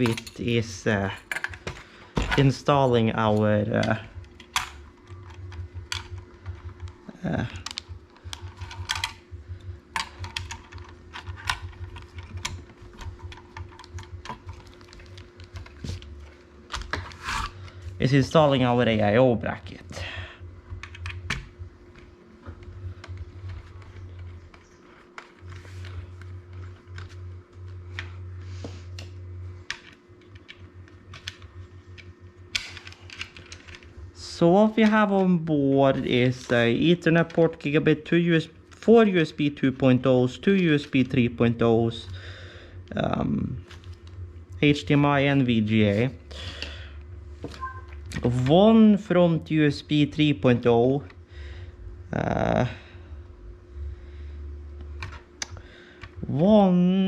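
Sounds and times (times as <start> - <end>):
steady low hum: 0.0 - 57.0
small metal parts clicking: 7.6 - 9.2.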